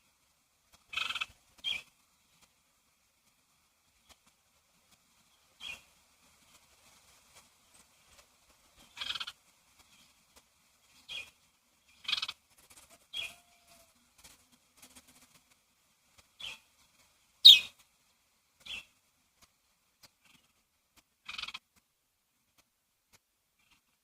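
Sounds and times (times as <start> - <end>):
birds chirping: 17.4 - 17.8.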